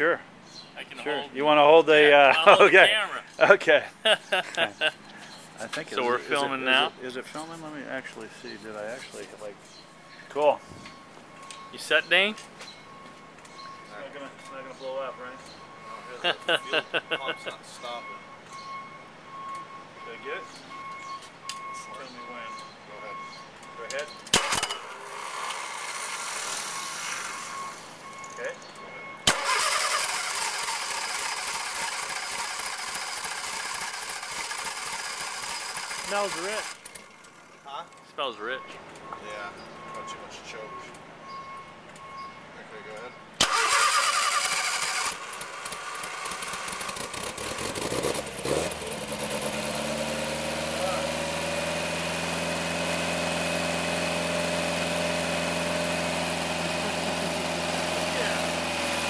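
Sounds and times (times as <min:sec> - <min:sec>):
car engine idling: 0:29.2 - 0:37.6, 0:43.4 - 0:59.0.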